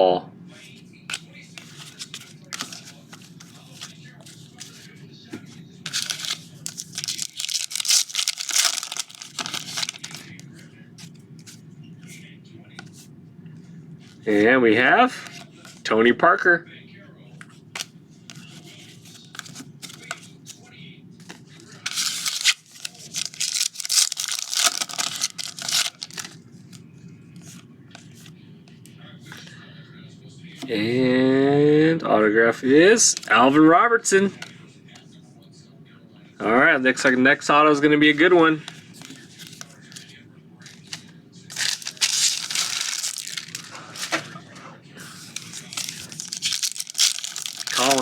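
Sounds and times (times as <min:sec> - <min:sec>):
card pack wrapper tearing and crinkling: 0:05.9 - 0:10.4, 0:21.9 - 0:26.4, 0:40.8 - 0:44.2, 0:45.3 - 0:48.0.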